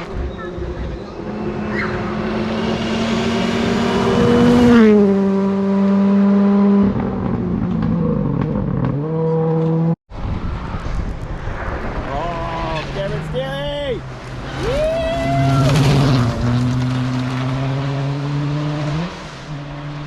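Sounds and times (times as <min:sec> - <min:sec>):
rally car engine at lower revs: 0:00.0 - 0:10.0, 0:15.6 - 0:20.0
rally car engine revving: 0:00.0 - 0:10.0, 0:14.2 - 0:20.0.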